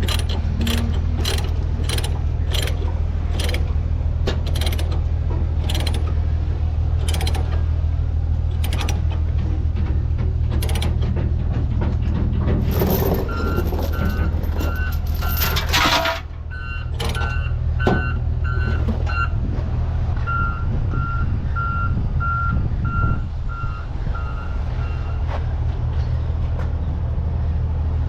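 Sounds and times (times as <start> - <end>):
diesel engine running: 0.0 - 28.0
backup alarm beeping: 13.2 - 15.4, 16.5 - 19.4, 20.2 - 25.2.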